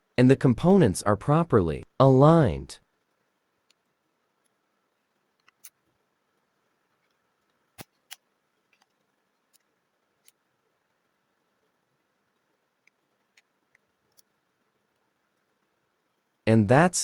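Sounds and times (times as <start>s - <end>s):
small sharp clicks of parts: 5.4s - 5.8s, 7.0s - 10.4s.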